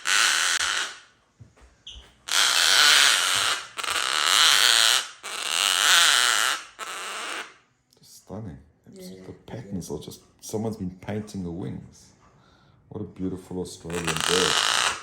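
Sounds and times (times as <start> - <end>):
cockatoo rasping calls: 0.0 - 1.0, 2.2 - 7.6, 13.9 - 15.0.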